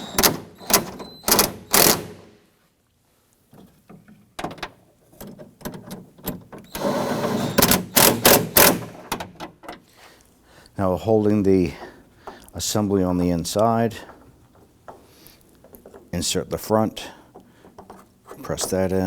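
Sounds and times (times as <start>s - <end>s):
tool clicking and knocking on bolts: 7.6s - 9.9s, 11.6s - 19.0s.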